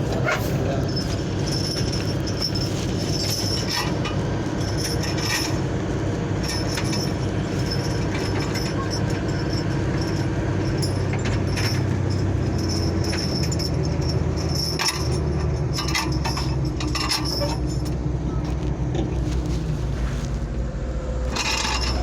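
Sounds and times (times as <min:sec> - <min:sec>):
metallic clanks and squeaks: 0:00.0 - 0:19.2, 0:21.2 - 0:22.0
excavator diesel engine running: 0:00.0 - 0:22.0.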